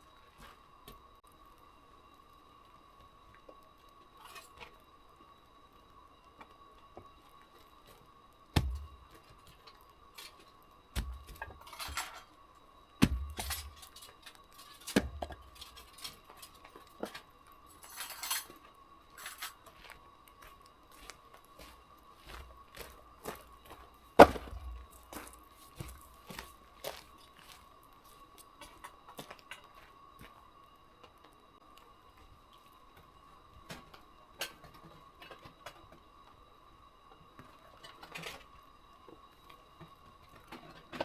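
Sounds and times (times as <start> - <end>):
faint steady tone: 0.0 - 41.0
rustling and wood clatters: 21.0 - 27.6
logs dropped onto a pile: 24.2 - 26.0.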